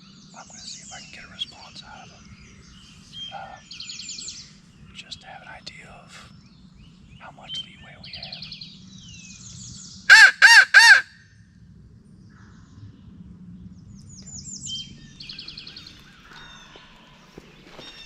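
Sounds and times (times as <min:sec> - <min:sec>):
songbirds trilling: 0:00.0 - 0:11.1, 0:12.1 - 0:18.0
crow call caws: 0:10.1 - 0:11.2.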